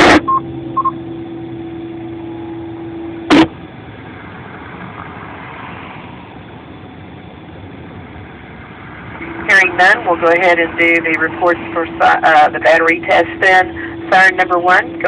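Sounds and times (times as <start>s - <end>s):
steady radio hum: 0.0s - 0.9s, 2.4s - 15.0s
short high beeps: 0.0s - 1.0s
steady background noise: 0.0s - 15.0s
radio squelch burst: 3.3s - 3.5s.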